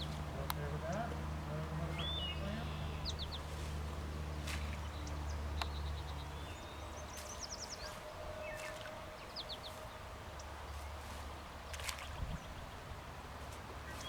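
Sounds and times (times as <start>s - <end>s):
bird chirping: 0.0s - 3.5s.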